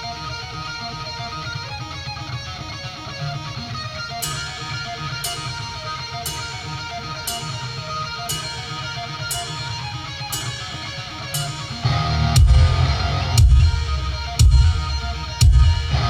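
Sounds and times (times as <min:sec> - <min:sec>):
rock music through pa speaker: 0:00.0 - 0:16.0
cymbal strikes: 0:04.2 - 0:16.0.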